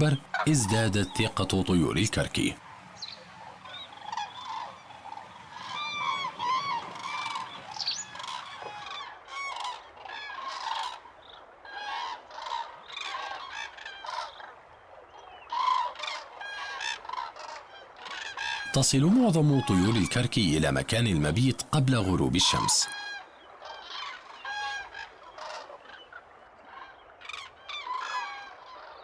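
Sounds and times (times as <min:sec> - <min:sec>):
cranes honking: 0:00.0 - 0:09.0.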